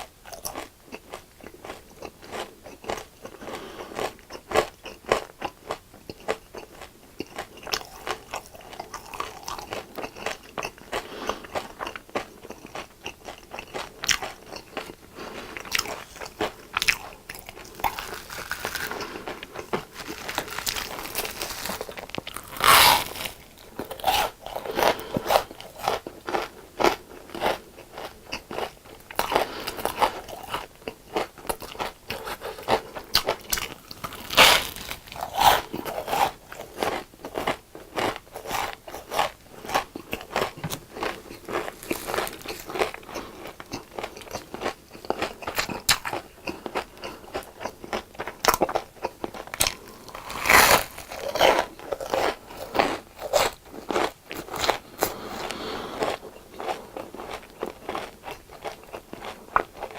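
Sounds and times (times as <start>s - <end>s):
chewing crisp fried food: 0.0s - 59.9s.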